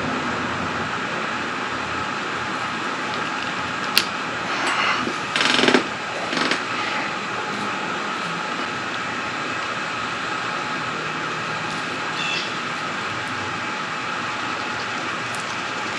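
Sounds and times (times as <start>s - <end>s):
steady background noise: 0.0s - 15.9s
ratcheting rasps: 4.7s - 7.1s.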